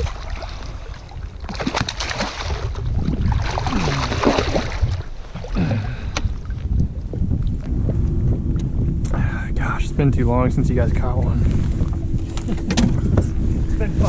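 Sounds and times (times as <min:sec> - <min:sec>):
water sloshing around boat: 0:00.0 - 0:07.7
wind buffeting microphone: 0:00.0 - 0:14.0.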